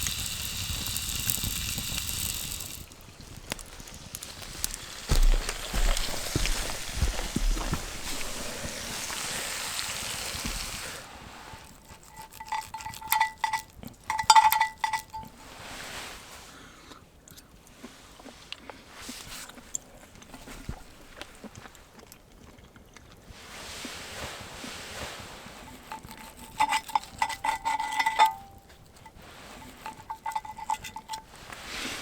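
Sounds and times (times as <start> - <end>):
steady hiss: 0.0 - 11.7
small handling sounds: 0.0 - 15.4, 25.5 - 32.0
metal cookware clinking: 12.3 - 15.3, 25.9 - 28.6, 29.7 - 31.3.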